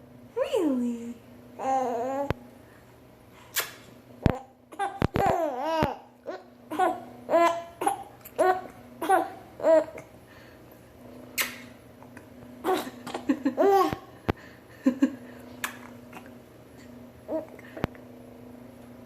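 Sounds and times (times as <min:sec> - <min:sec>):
baby giggling: 0:12.6 - 0:14.1.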